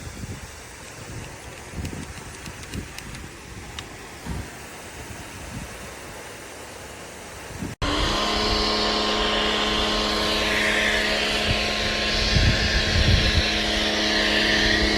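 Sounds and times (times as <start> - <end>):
pressure washer hum: 0.0 - 14.9
water spray hissing: 0.0 - 14.9.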